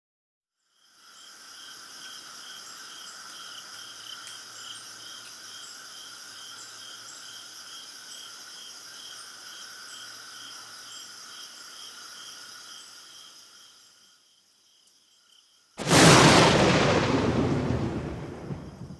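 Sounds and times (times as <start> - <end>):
crickets trilling: 0.8 - 18.9.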